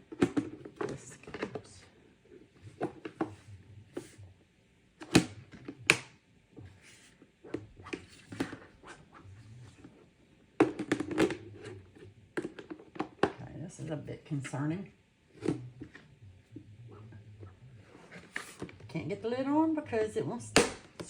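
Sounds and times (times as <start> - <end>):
plastic lid knocking and rattling: 10.6 - 11.5.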